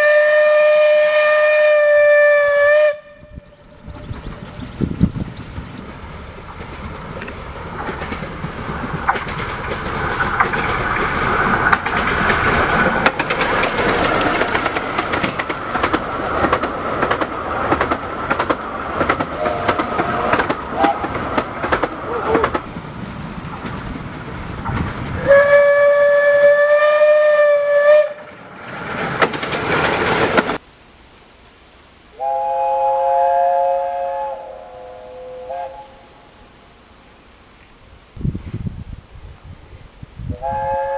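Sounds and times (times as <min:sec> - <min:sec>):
train whistle blast: 0:00.0 - 0:03.5, 0:19.4 - 0:21.1, 0:25.2 - 0:28.3, 0:32.2 - 0:36.5, 0:40.3 - 0:40.9
train wheels clattering on rails: 0:04.0 - 0:25.7, 0:28.2 - 0:30.6.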